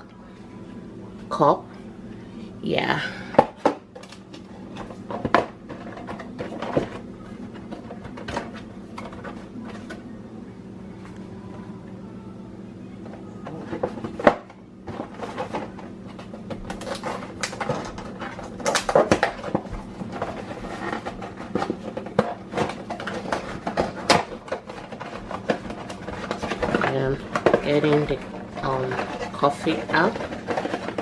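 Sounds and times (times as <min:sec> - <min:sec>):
low hum: 0:00.0 - 0:31.0
cups and containers clinking: 0:16.6 - 0:31.0.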